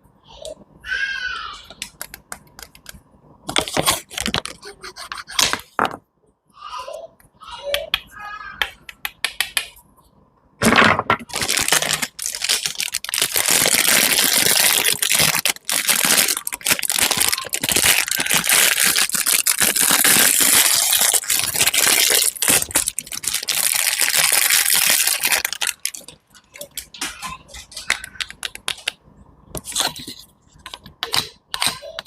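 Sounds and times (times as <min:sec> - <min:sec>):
food crackling and crunching: 0:01.7 - 0:05.8, 0:10.6 - 0:29.0, 0:29.6 - 0:32.0.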